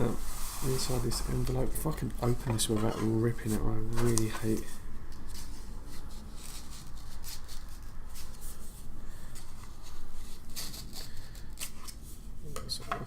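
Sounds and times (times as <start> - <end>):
paper envelope rustling: 0.0 - 12.0.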